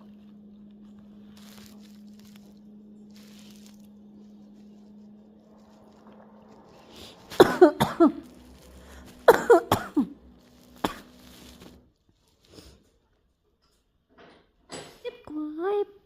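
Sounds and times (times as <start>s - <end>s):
bird imitating a cough: 7.4s - 8.2s, 9.3s - 10.1s.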